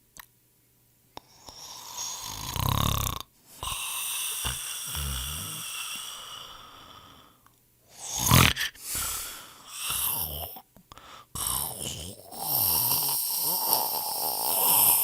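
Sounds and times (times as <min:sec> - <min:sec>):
person snoring: 0:01.2 - 0:15.0
loud snort: 0:01.6 - 0:07.3, 0:08.0 - 0:10.6, 0:11.4 - 0:15.0.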